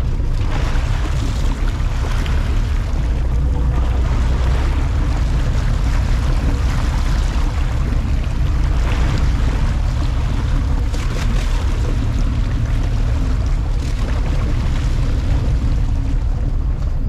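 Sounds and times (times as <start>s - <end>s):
boat engine running: 0.0s - 17.0s
water rushing along hull: 0.0s - 17.0s.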